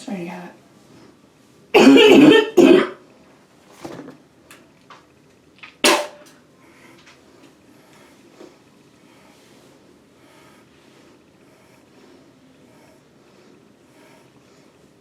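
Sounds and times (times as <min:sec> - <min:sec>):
woman coughing: 0:01.8 - 0:03.0.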